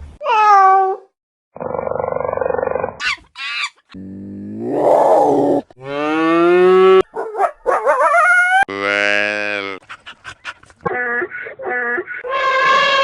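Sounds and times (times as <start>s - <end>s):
moo-like lowing calls: 4.0s - 7.1s, 8.6s - 9.8s.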